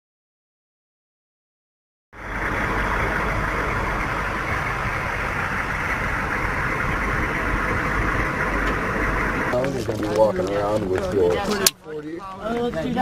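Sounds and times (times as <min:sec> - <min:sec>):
engine running with low rumble: 0:02.2 - 0:11.7.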